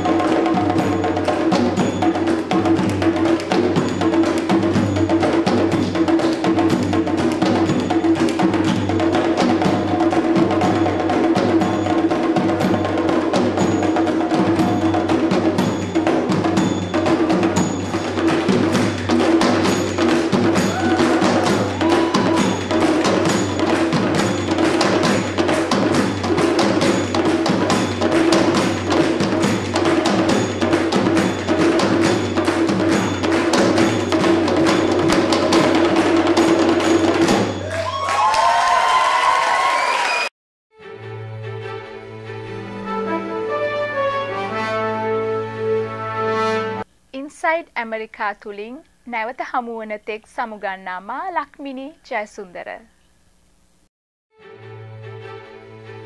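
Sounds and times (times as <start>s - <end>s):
drums playing fast rhythm: 0.0s - 38.1s.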